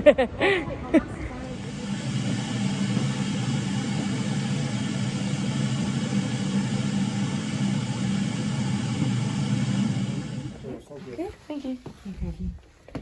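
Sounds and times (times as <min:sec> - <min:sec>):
vehicle engine droning: 0:01.4 - 0:10.6.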